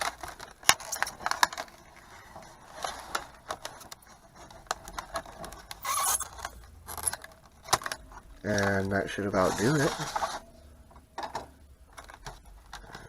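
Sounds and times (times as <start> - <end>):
knife scraping through plastic: 9.4 - 10.4.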